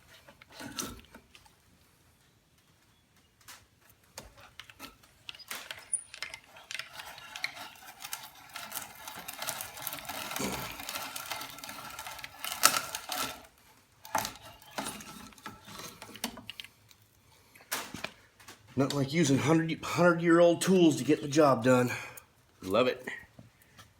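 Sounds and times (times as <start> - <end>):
hand brace drilling wood: 0.0 - 1.4, 4.2 - 16.7.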